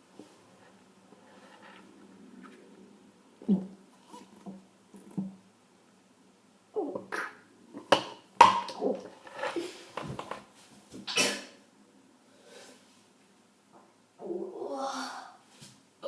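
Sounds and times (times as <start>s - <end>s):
person swallowing drink: 3.4s - 3.8s.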